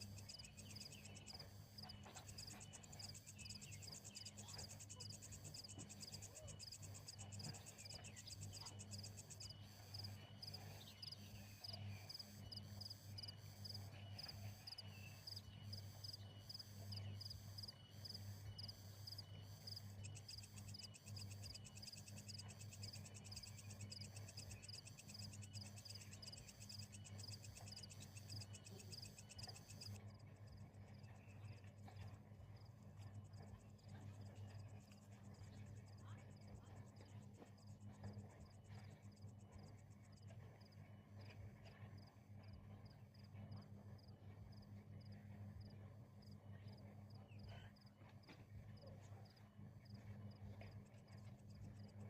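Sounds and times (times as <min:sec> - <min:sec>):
steady low hum: 0:00.0 - 0:52.0
night insects chirping: 0:12.1 - 0:30.0.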